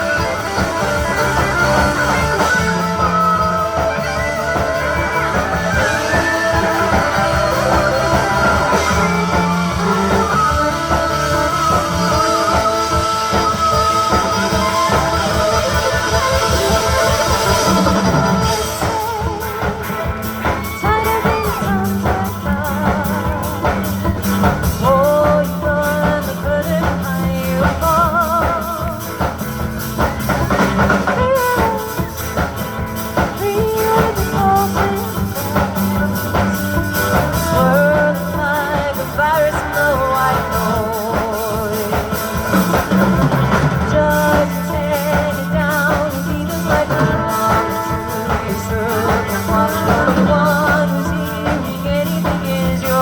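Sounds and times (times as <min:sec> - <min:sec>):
vibrato lead melody: 0:00.0 - 0:26.0
live rock band playing: 0:00.0 - 0:53.0.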